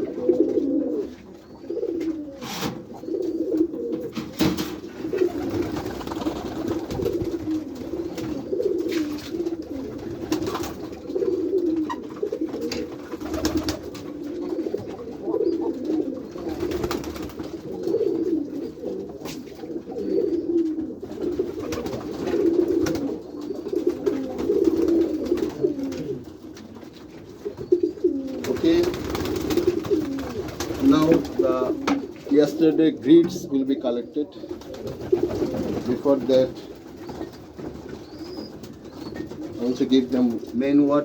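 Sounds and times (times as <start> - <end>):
pigeons cooing: 0.0 - 41.0.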